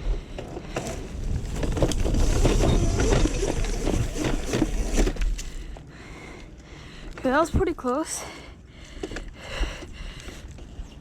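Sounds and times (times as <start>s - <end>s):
chain and tyre rattling: 0.0s - 5.5s.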